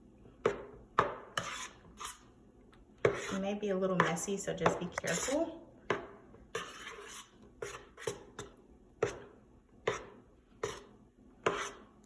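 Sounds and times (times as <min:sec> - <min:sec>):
utensil scraping against bowl: 0:01.3 - 0:02.4, 0:03.0 - 0:05.6, 0:06.5 - 0:12.0.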